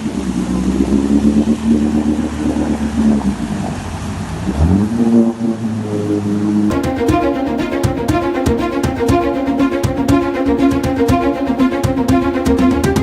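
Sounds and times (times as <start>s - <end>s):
off-road vehicle engine revving: 0.0s - 6.7s.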